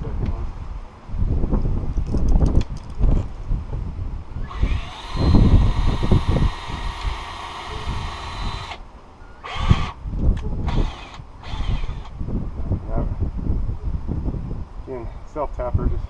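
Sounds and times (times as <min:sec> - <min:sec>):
power drill whining: 0:04.4 - 0:08.8, 0:09.4 - 0:10.0, 0:10.6 - 0:12.1.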